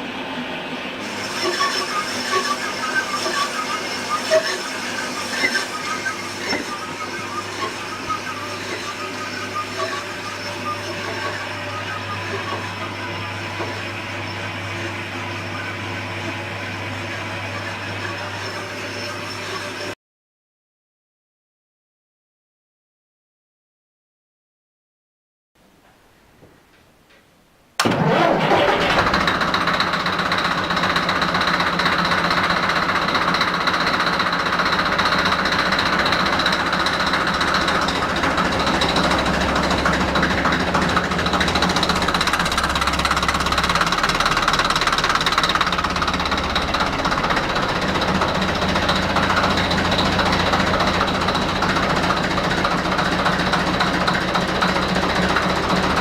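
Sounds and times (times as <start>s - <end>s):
diesel engine clattering: 27.8s - 56.0s.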